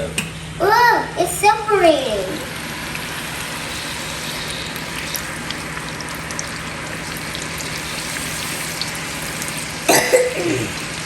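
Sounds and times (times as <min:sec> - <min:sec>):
hot oil sizzling: 0:00.9 - 0:11.0
oil crackles: 0:02.6 - 0:09.9
person clearing throat: 0:09.9 - 0:10.8.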